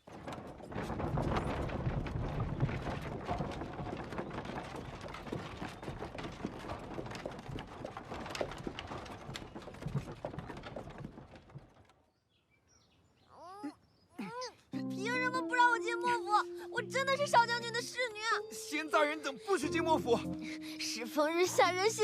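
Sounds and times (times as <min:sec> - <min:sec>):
horse hooves clip-clopping: 0:00.0 - 0:12.1.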